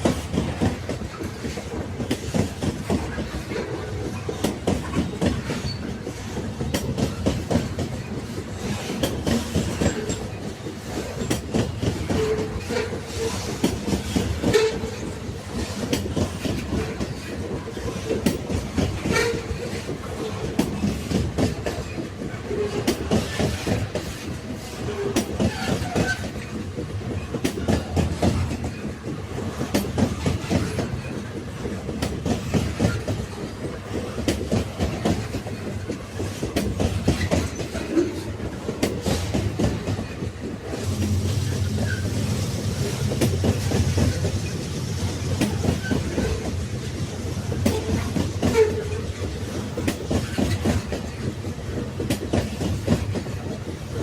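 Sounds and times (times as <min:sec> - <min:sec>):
railway carriages rumbling: 0:00.0 - 0:54.0
train wheels clicking on rails: 0:00.0 - 0:54.0.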